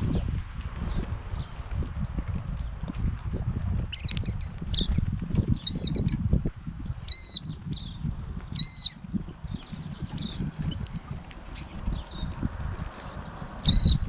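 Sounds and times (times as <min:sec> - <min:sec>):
birds chirping: 0:00.0 - 0:01.7, 0:03.9 - 0:14.0.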